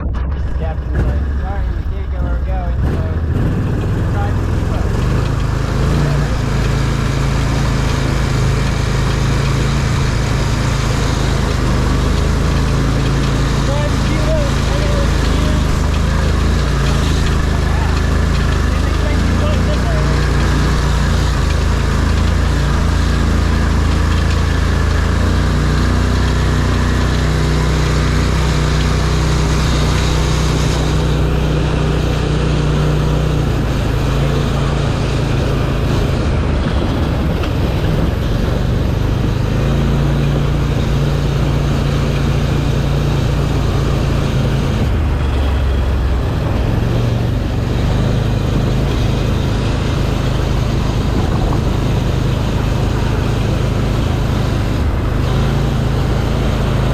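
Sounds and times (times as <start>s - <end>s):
off-road vehicle engine revving: 0.0s - 56.9s
steady rushing noise: 0.0s - 56.9s.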